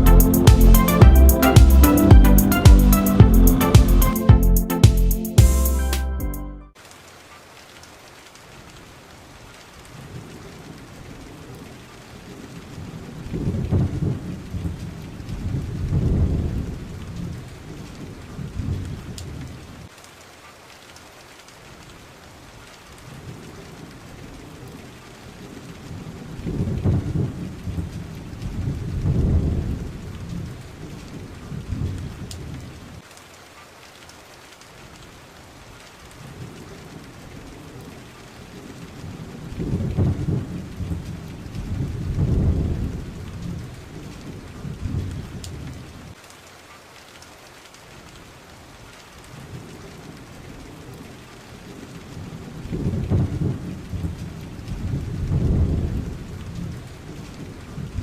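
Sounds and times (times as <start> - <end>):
steady rain hiss: 6.8 - 58.0
deep rumbling thunder: 54.8 - 56.3.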